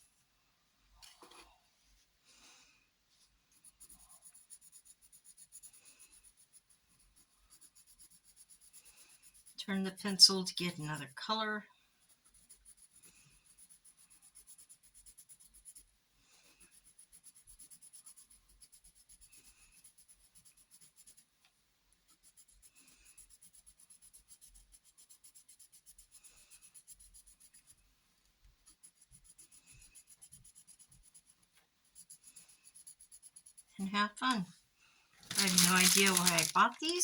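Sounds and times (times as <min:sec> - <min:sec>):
pencil scribbling on paper: 0:03.5 - 0:11.1, 0:12.0 - 0:21.4, 0:22.0 - 0:27.8, 0:28.6 - 0:33.8.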